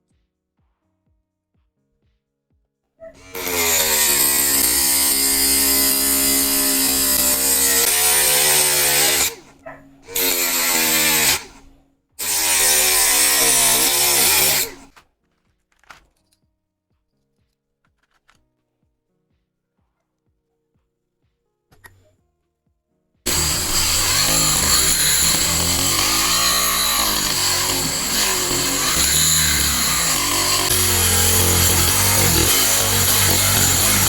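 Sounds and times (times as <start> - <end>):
electric drill whining: 3.2 - 14.9, 23.3 - 34.0.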